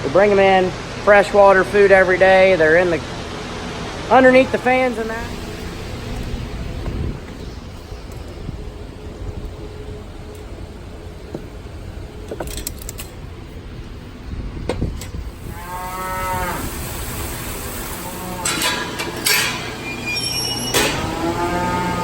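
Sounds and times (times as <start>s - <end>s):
cattle mooing: 15.4s - 17.0s, 18.1s - 18.9s, 20.8s - 22.0s.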